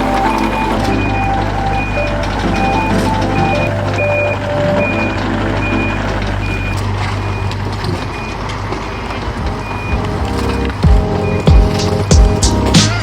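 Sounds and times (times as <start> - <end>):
engine running: 0.0 - 13.0
reversing alarm beeping: 0.0 - 13.0.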